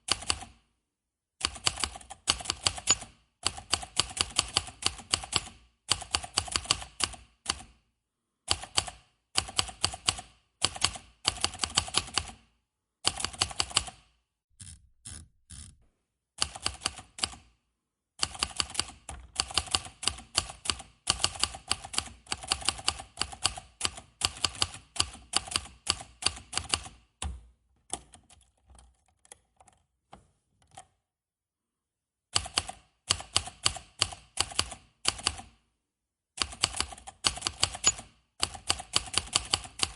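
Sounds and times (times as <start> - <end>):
manual typewriter key strikes: 2.3 - 3.9, 36.4 - 39.9.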